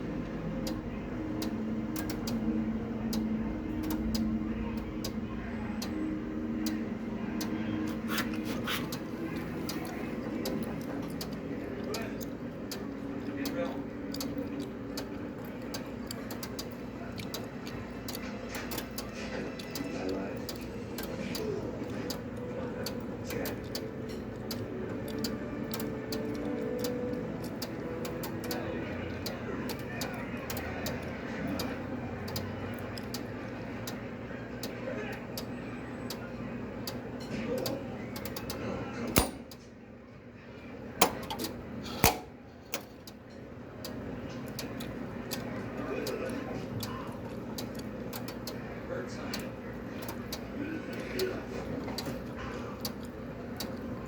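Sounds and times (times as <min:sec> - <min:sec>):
washing machine humming: 0:00.0 - 0:54.0
sharp mechanical clicks and knocks: 0:39.2 - 0:39.6, 0:41.0 - 0:43.2.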